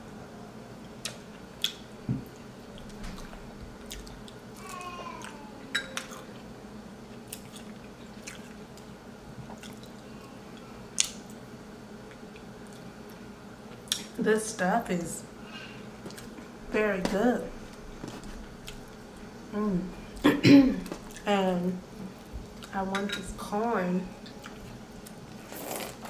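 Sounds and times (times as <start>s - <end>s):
wet chewing and squishing: 2.7s - 5.4s, 7.2s - 8.9s, 9.5s - 10.0s.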